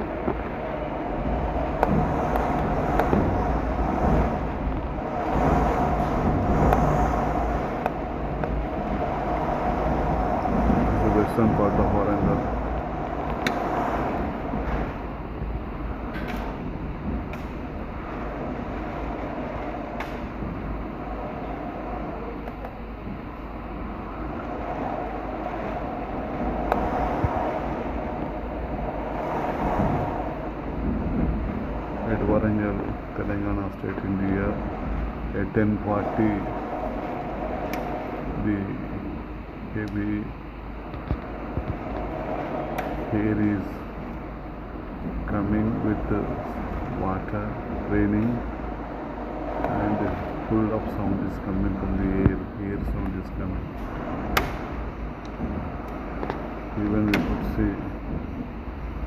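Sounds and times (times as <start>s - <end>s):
heavy rain rushing: 0.0s - 59.0s
wind buffeting microphone: 0.0s - 59.0s
raindrops ticking nearby: 36.0s - 38.3s.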